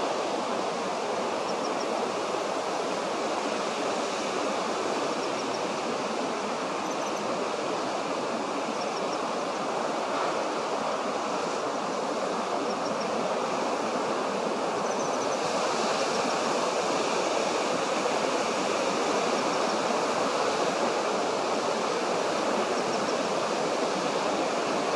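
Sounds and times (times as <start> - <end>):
running water rushing: 0.0 - 24.9.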